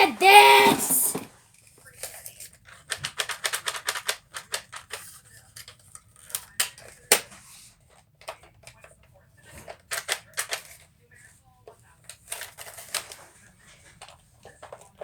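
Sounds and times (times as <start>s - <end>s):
plastic parts clicking and rattling: 2.7s - 7.2s.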